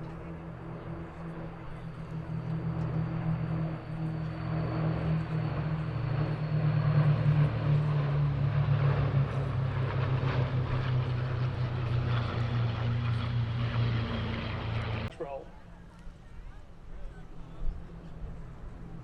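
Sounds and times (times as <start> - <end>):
propeller aircraft flying overhead: 0.0 - 19.0.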